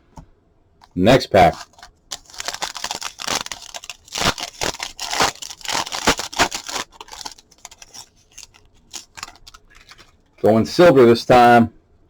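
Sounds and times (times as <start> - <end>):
wrapper tearing and crinkling: 0.8 - 10.3.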